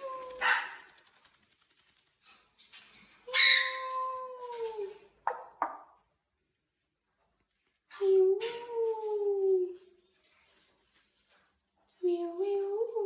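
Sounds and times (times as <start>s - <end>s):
faint rapid ticking: 0.0s - 2.4s
parrot calling: 3.3s - 4.0s
parrot squawks: 3.3s - 4.0s.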